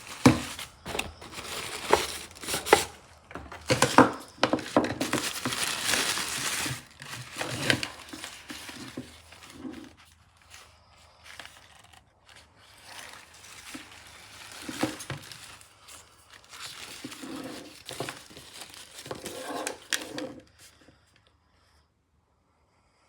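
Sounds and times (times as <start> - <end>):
packaging crinkling: 0.0 - 20.8.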